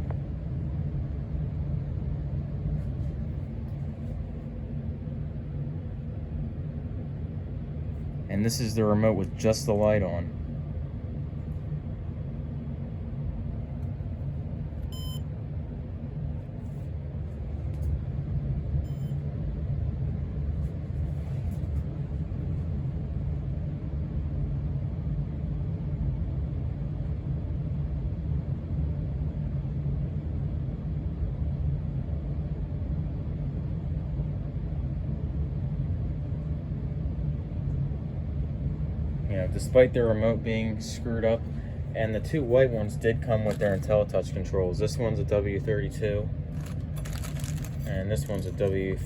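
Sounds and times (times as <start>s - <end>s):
steady low rumble: 0.0s - 49.0s
faint short beeps: 14.9s - 15.2s.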